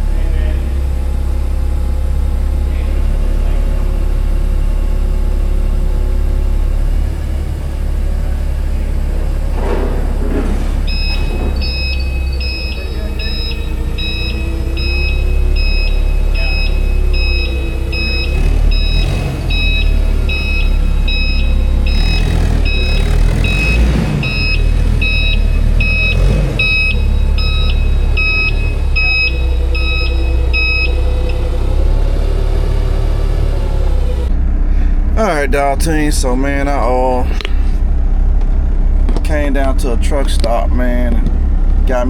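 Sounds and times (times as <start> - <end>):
truck engine rumbling: 0.0 - 42.0
electronic beeper: 10.9 - 31.6.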